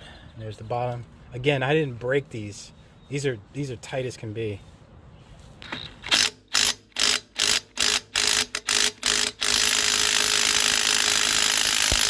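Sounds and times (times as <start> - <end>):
impact wrench hammering: 5.7 - 12.0.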